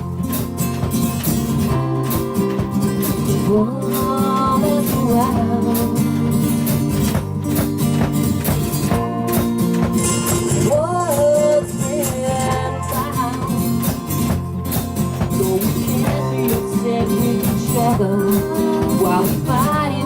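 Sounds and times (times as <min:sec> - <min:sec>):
strummed acoustic guitar: 0:00.0 - 0:20.0
person singing: 0:01.7 - 0:06.8, 0:10.4 - 0:14.1, 0:15.2 - 0:20.0.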